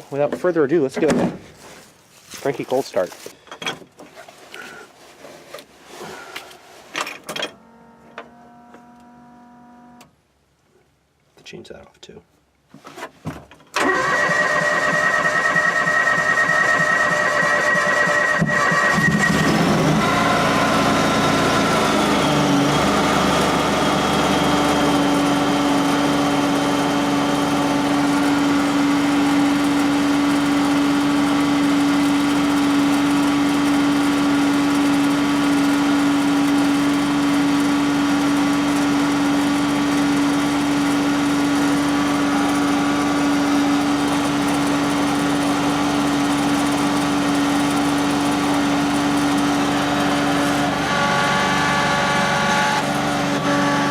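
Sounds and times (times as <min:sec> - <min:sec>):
lawn tractor engine running: 0:13.8 - 0:53.9.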